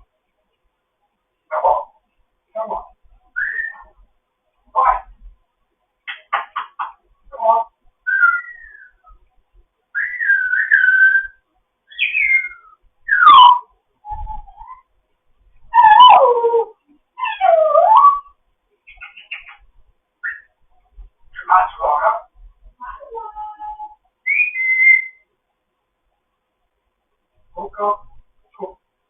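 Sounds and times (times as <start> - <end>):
parrot whistling and chattering: 3.4 - 4.0, 8.0 - 9.2, 10.0 - 14.9, 17.2 - 20.6, 23.8 - 25.3.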